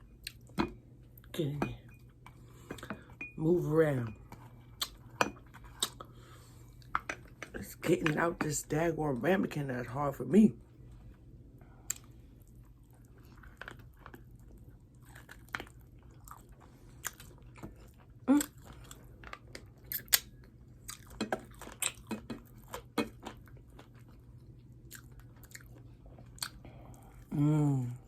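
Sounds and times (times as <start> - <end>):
person chewing and smacking: 0.0 - 1.3, 4.1 - 8.2, 11.7 - 27.3.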